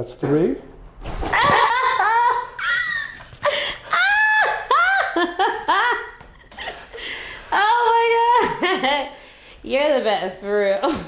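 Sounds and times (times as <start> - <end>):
woman giggling and squealing: 1.3 - 6.8.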